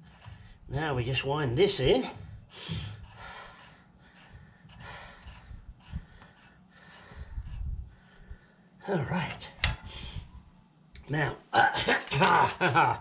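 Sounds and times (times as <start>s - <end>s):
man breathing heavily: 0.0s - 0.7s, 1.8s - 8.8s, 9.8s - 10.5s.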